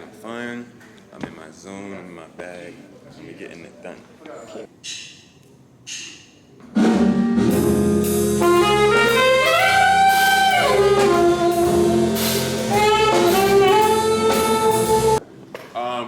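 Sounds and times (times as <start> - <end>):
jazz music with saxophone and brass: 6.8 - 15.2.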